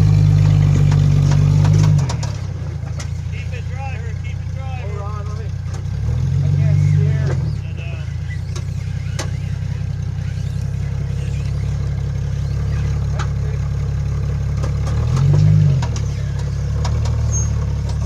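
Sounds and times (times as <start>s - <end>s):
off-road vehicle engine: 0.0s - 18.0s
sharp clicks and knocks: 0.4s - 3.2s.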